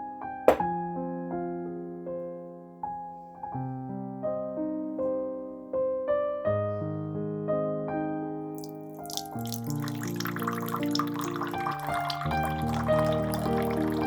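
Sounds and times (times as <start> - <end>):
slow solo piano melody: 0.0 - 0.8.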